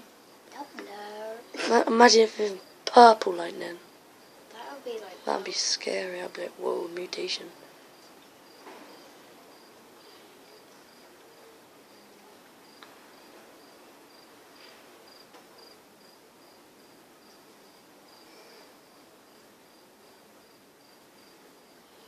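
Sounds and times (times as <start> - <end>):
faint background hiss: 0.0 - 22.0
cricket chirping: 3.7 - 5.5, 7.4 - 22.0.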